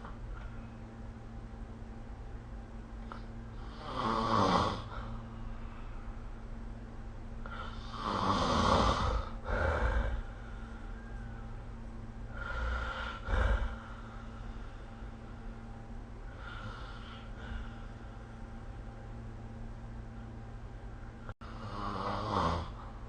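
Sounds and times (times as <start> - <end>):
steady low hum: 0.0 - 23.0
person snoring: 3.6 - 5.1, 7.4 - 10.5, 12.3 - 14.4, 21.4 - 22.9.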